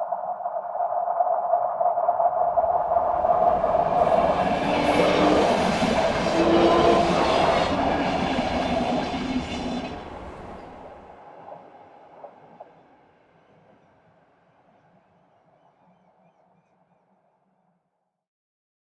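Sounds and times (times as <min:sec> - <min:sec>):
train passing: 0:02.7 - 0:16.4.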